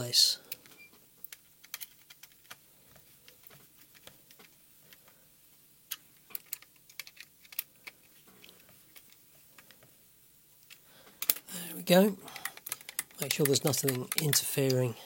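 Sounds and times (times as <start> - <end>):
screwdriver and plastic parts clicking: 0.5 - 2.6, 5.9 - 9.8, 10.6 - 11.5, 12.3 - 14.9.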